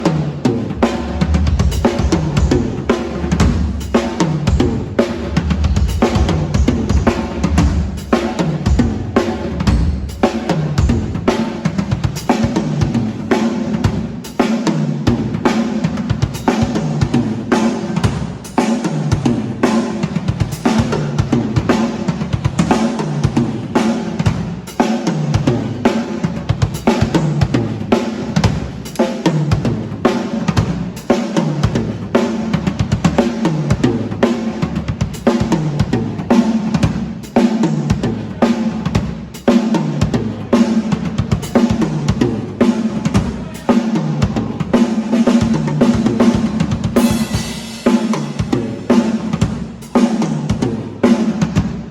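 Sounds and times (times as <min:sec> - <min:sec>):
drum fills: 0:00.0 - 0:51.9
low booming drum tones: 0:00.6 - 0:12.1
snare drum hits and rimshots: 0:45.1 - 0:51.4.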